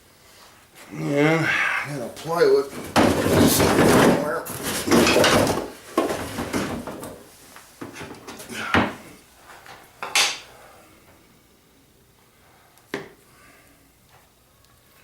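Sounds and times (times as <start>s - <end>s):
wooden boards knocking and scraping: 2.7s - 7.2s.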